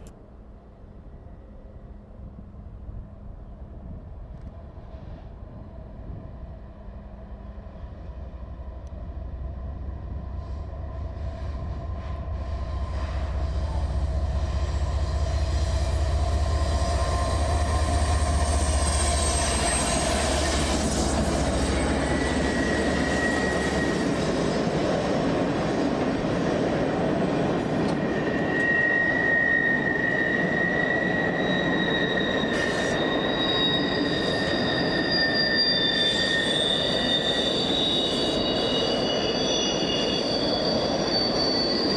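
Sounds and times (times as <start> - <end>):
train wheels rolling: 7.8 - 41.9
high wheel squeal: 12.7 - 24.8, 27.2 - 41.9.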